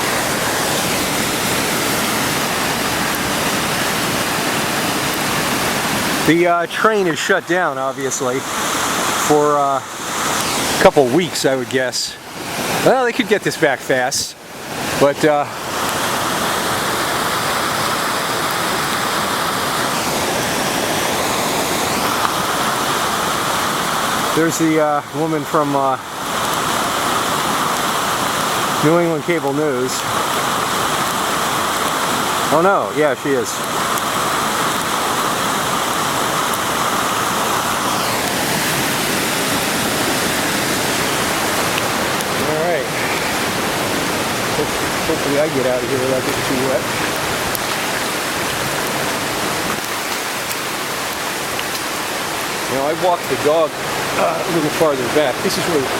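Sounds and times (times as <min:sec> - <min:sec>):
floodwater rushing: 0:00.0 - 0:55.9.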